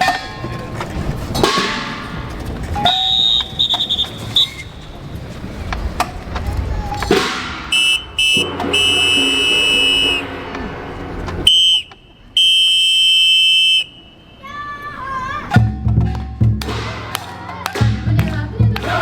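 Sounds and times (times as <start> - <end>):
crowd hubbub: 0.0 - 19.0
shrill whistle blasts: 2.8 - 4.9, 7.6 - 10.4, 11.4 - 14.7.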